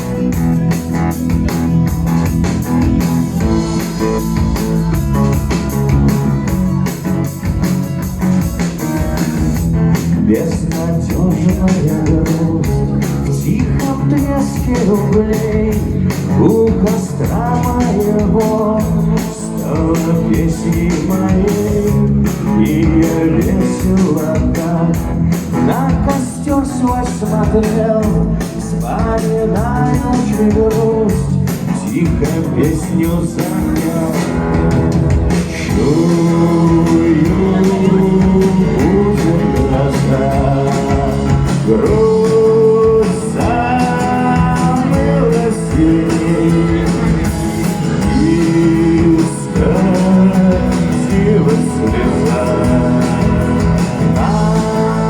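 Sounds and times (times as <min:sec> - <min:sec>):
man singing: 0:00.0 - 0:55.0
strummed acoustic guitar: 0:00.0 - 0:55.0.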